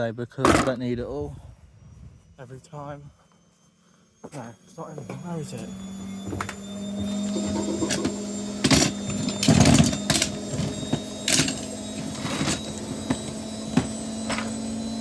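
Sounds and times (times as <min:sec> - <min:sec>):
steady low hum: 0:00.5 - 0:15.0
tools clattering in a toolbox: 0:07.3 - 0:14.6.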